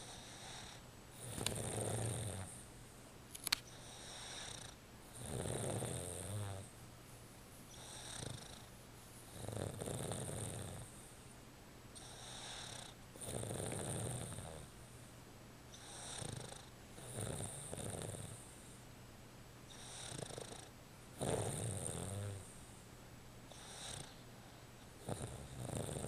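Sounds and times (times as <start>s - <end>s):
dog snoring: 0.0s - 2.7s, 3.7s - 6.7s, 7.7s - 8.7s, 9.3s - 11.1s, 12.0s - 14.7s, 15.8s - 18.7s, 19.7s - 22.6s, 23.5s - 24.2s, 25.0s - 26.0s.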